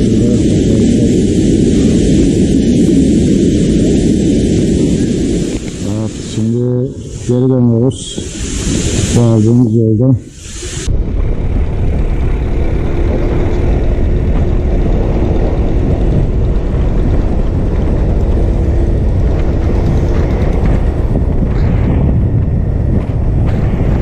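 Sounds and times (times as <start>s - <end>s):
motorcycle engine running: 0.0s - 6.0s, 10.8s - 24.0s
wind rushing on microphone: 0.0s - 24.0s.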